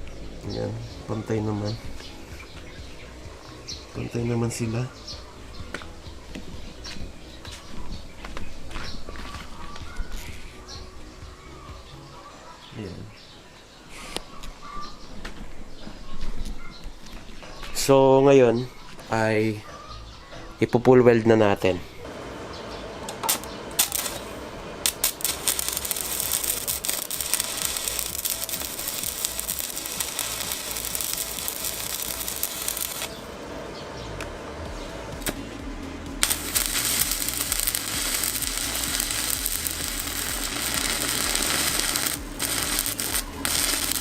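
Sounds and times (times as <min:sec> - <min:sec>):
arc welding crackling hiss: 0:23.3 - 0:33.3, 0:36.2 - 0:44.0.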